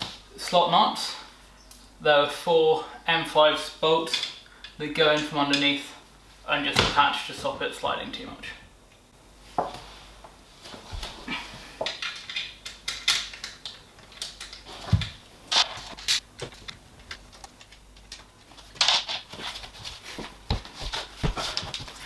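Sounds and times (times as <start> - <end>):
small metal parts clinking: 1.3 - 2.0, 15.5 - 15.7.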